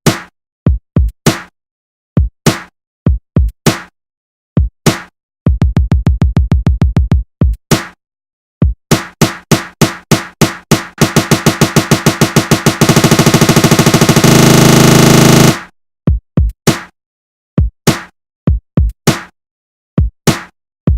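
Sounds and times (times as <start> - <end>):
drum machine kick hits: 9.8 - 16.6
drum machine stutter roll buzz: 11.0 - 15.7.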